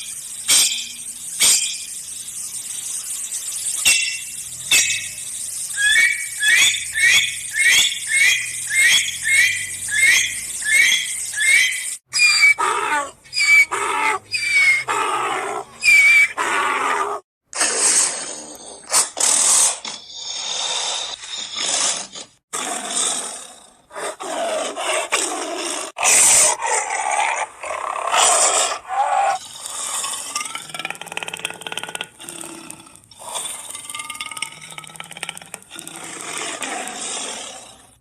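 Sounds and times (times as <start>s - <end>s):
high-pitched animal cries: 5.8s - 17.0s
animal growls and roars: 12.6s - 38.0s.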